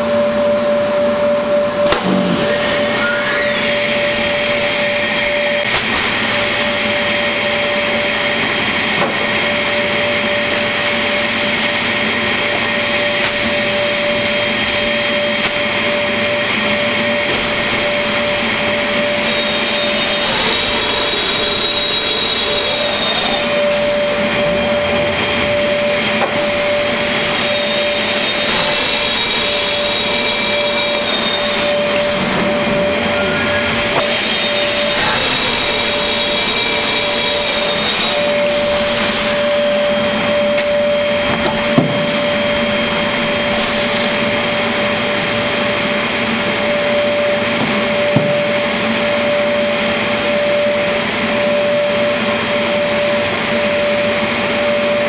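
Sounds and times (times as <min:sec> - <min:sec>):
machine whine: 0:00.0 - 0:55.0
board-cutting machine sawing: 0:01.8 - 0:55.0.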